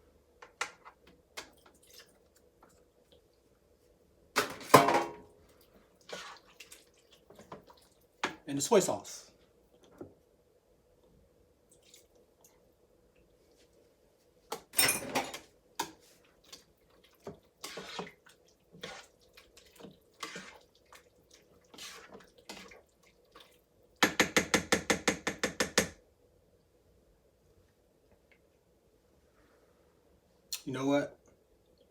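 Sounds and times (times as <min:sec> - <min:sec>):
spoon scraping in pot: 0:17.6 - 0:18.2, 0:18.8 - 0:19.1, 0:20.2 - 0:20.6, 0:21.7 - 0:22.8.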